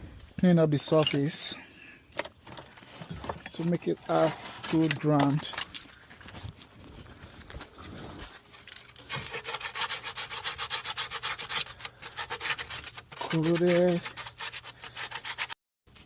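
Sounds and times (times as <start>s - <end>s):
scraping rusty metal: 8.1s - 15.6s.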